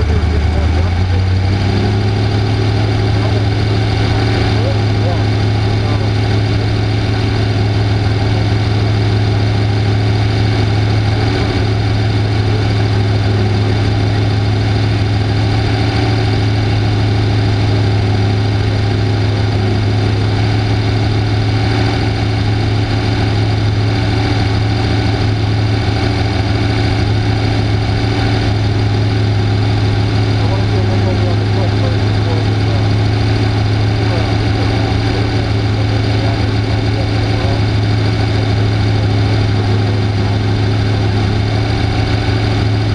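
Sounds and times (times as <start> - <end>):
engine idling with low hum: 0.0 - 42.9.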